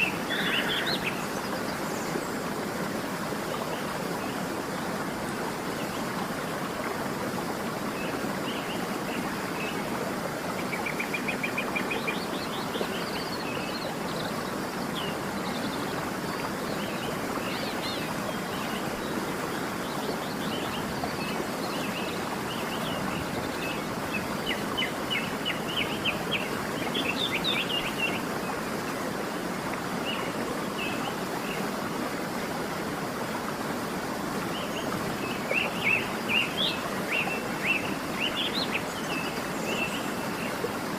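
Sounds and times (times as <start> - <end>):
birds chirping and trilling: 0.0 - 1.5
waterfall rushing: 0.0 - 40.9.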